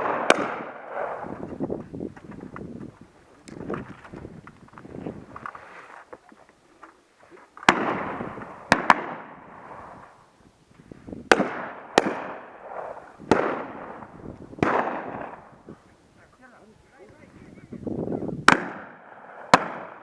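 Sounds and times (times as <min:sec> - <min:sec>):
rolling echo of gunshots: 0:00.0 - 0:01.4, 0:07.6 - 0:10.1, 0:11.3 - 0:15.5, 0:18.4 - 0:20.0
shotgun shots: 0:00.0 - 0:01.4, 0:07.6 - 0:10.0, 0:11.3 - 0:15.5, 0:18.4 - 0:20.0.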